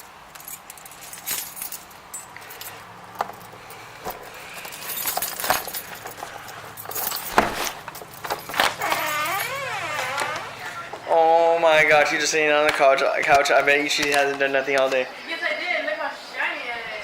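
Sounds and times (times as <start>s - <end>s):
keys jangling: 0.3s - 10.5s.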